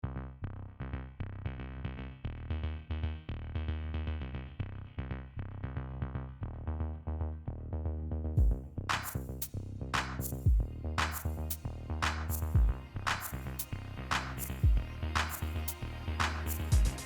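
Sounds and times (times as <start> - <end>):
synthesizer and bass pattern: 1.8 - 17.0
drums and cymbals: 8.4 - 9.3, 12.0 - 13.3, 16.5 - 17.0.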